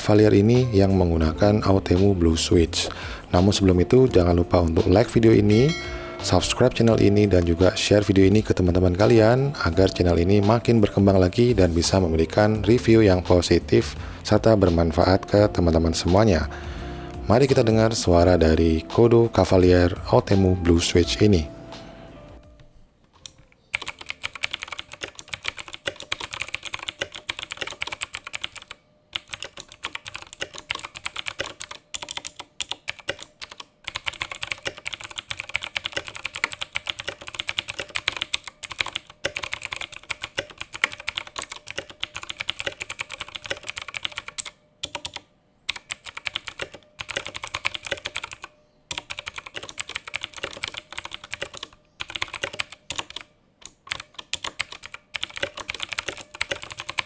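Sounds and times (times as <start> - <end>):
mechanical keyboard key clicks: 23.2 - 57.0.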